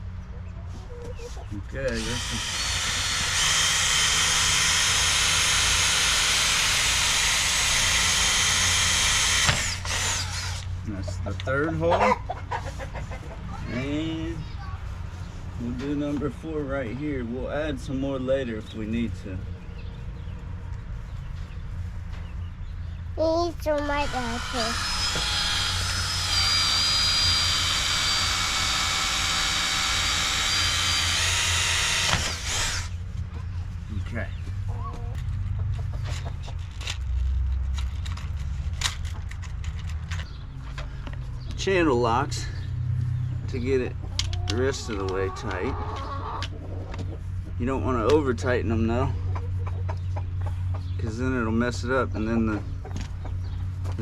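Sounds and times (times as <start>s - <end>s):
electric drill whining: 2.0s - 10.7s, 24.0s - 33.0s.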